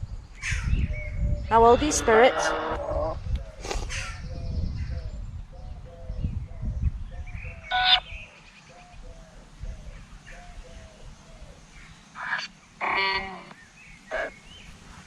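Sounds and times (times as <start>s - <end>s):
short repeated blips: 7.7s - 8.1s.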